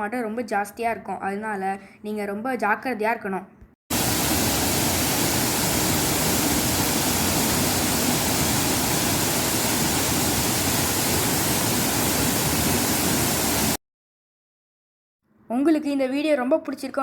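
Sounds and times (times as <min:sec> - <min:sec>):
waterfall roaring: 0:03.9 - 0:13.8.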